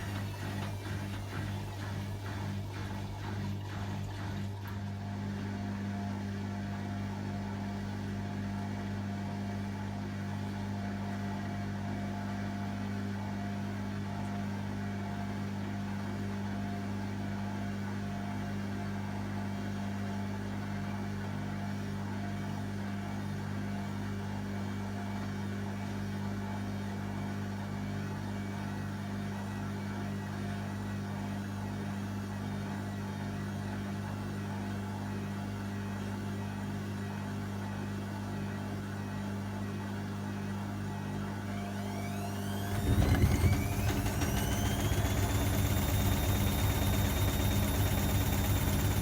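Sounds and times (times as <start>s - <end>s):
washing machine motor humming: 0.0s - 6.8s, 41.3s - 49.0s.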